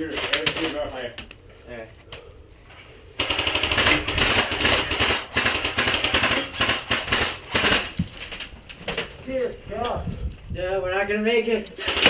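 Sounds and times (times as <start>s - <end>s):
airsoft gun firing full auto: 3.2s - 7.9s, 11.8s - 12.0s.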